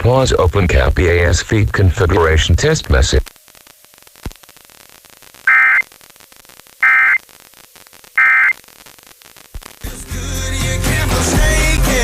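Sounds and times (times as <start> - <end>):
buzzy warbling data tones: 5.4 - 6.0, 6.8 - 7.4, 8.2 - 8.8.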